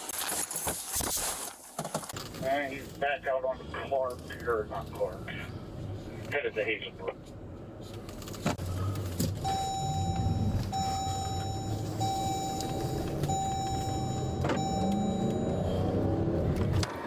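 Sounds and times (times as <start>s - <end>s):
vehicle engine revving: 8.6s - 17.0s
electronic beeps: 9.4s - 16.2s.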